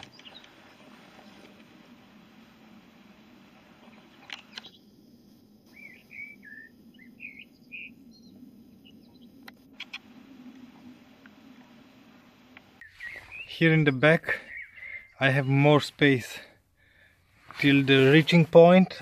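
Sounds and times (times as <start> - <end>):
low steady hum: 0.0 - 19.0
sharp clicks: 4.2 - 4.8, 9.4 - 10.1
faint bird chirps: 5.6 - 9.9, 12.8 - 15.6.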